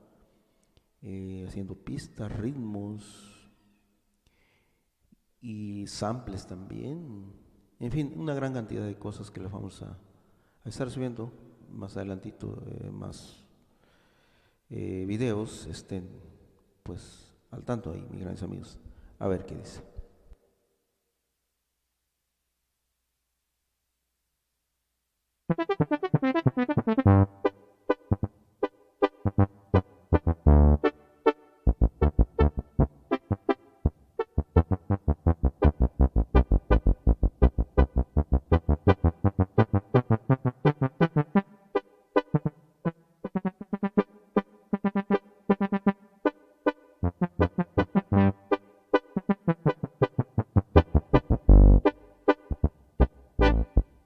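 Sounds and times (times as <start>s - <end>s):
keyboard playing tuba sample: 25.5s - 46.4s, 47.0s - 54.0s.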